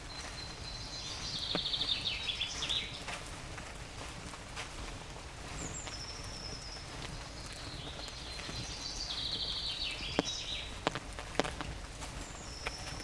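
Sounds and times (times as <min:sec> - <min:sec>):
songbird trilling: 0:00.0 - 0:03.0, 0:05.6 - 0:10.8.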